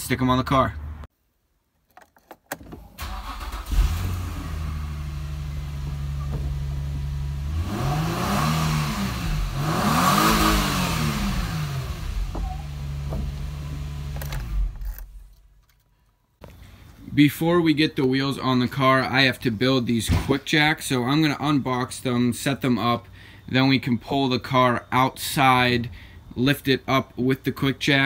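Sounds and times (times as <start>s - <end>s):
car engine starting and revving: 3.0s - 15.3s.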